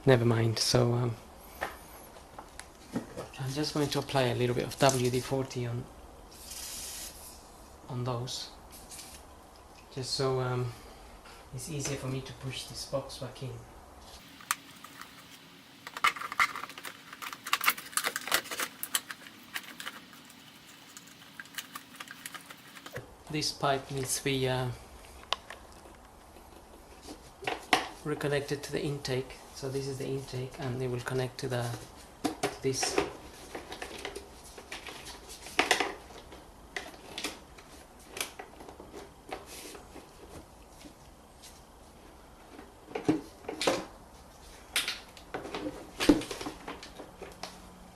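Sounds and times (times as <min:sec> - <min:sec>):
plastic clicks and rattles: 0:15.8 - 0:23.0.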